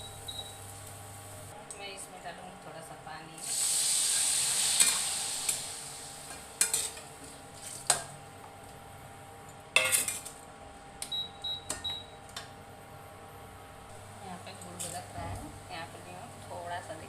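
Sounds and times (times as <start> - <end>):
hot pan sizzling: 3.4 - 8.0.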